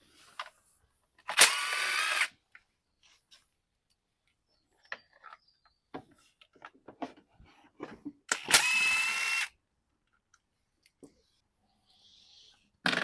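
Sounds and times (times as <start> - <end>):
power drill whining: 1.3 - 2.3, 8.3 - 9.5.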